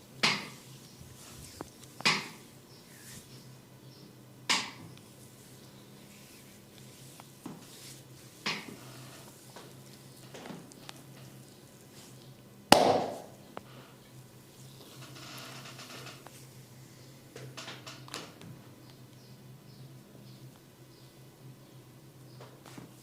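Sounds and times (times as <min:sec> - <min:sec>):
hands hitting head: 0:02.0 - 0:02.4, 0:12.7 - 0:13.4.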